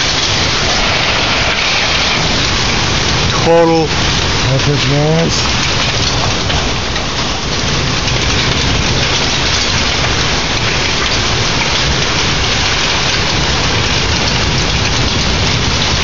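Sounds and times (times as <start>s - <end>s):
heavy rain falling: 0.0s - 16.0s.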